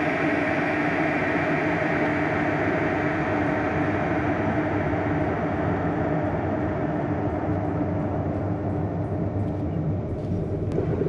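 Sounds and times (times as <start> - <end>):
electric kettles boiling water: 10.1 - 11.0.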